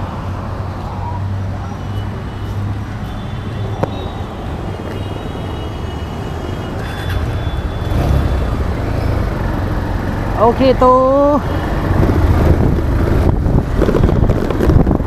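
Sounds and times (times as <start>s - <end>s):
wind and road noise: 0.0s - 15.0s
motorcycle engine hum: 6.2s - 15.0s.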